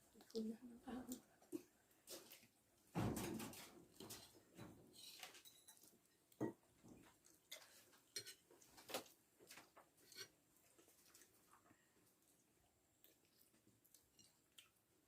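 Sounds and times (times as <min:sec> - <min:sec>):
chewing: 0:09.5 - 0:15.0.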